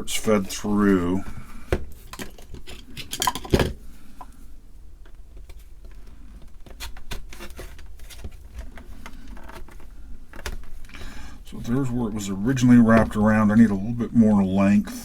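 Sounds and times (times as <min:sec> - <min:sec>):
plastic parts clicking and tapping: 0:01.7 - 0:03.8, 0:05.0 - 0:11.0.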